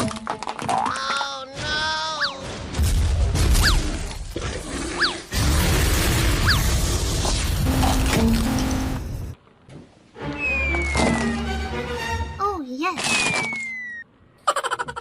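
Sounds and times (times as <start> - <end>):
music: 10.2 - 12.4
sliding whistle-like tones: 10.3 - 11.4, 13.0 - 14.0.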